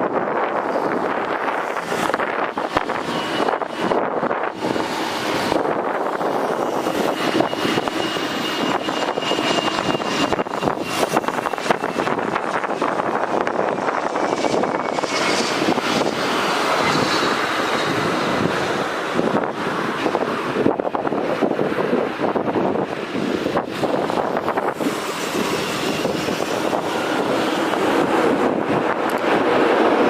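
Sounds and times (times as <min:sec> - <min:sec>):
jet aircraft passing: 0:00.0 - 0:30.0
wind buffeting microphone: 0:00.0 - 0:30.0.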